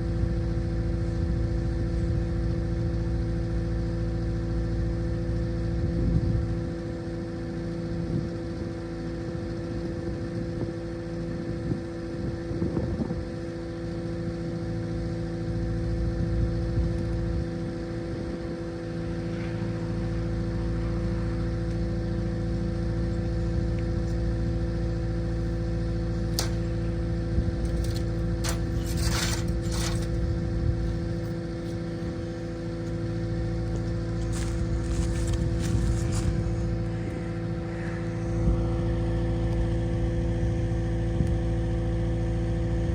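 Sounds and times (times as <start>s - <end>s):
diesel engine running: 0.0s - 42.9s
short rattles: 27.6s - 31.3s.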